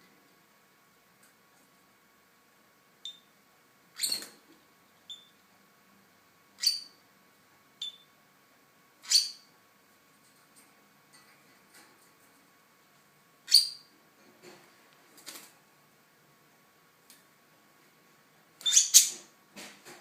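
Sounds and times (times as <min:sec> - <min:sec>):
harsh parrot squawks: 0:09.0 - 0:09.4, 0:18.6 - 0:19.2.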